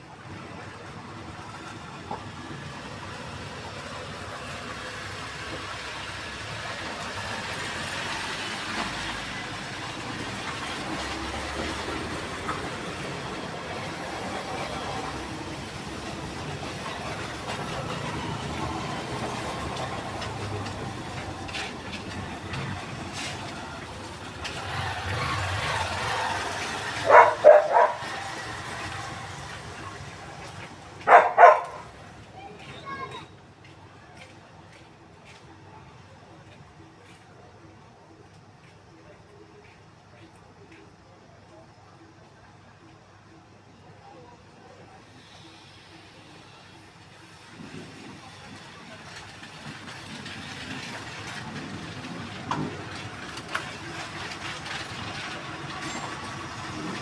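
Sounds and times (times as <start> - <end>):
vehicle running noise: 1.1 - 32.8, 45.2 - 57.0
dog barking: 27.0 - 28.2, 31.0 - 31.9.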